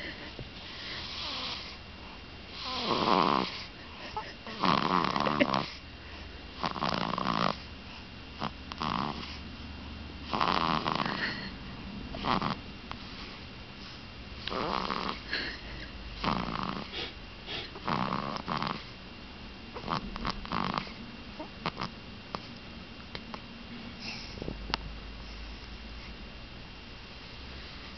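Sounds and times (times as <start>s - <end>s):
baby snoring: 0.9s - 1.8s, 2.5s - 3.7s, 4.4s - 5.8s, 6.5s - 7.7s, 8.4s - 9.4s, 10.2s - 11.5s, 12.1s - 13.4s, 14.4s - 15.6s, 16.2s - 19.0s, 19.7s - 22.0s.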